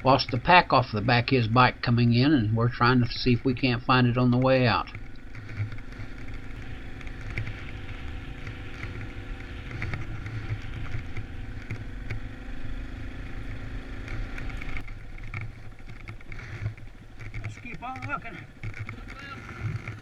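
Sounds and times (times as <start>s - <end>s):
motorcycle engine running: 0.0s - 20.0s
humming tone: 4.9s - 15.5s.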